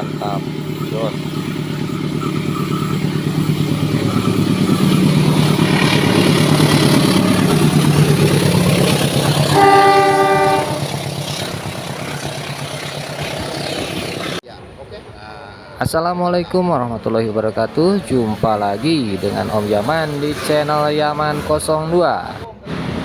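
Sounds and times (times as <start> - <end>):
train horn blast: 0.0 - 11.3
locomotive engine running: 0.0 - 23.0.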